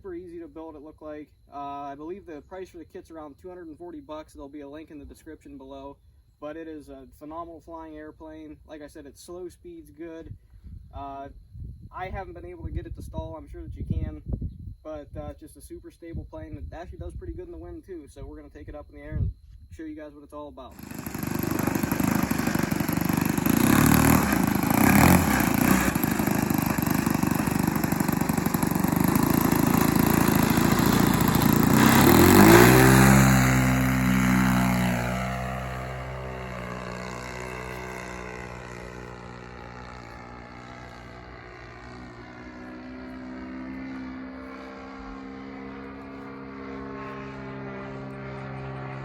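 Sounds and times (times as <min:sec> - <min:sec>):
model plane engine at high throttle: 0:20.7 - 0:49.0.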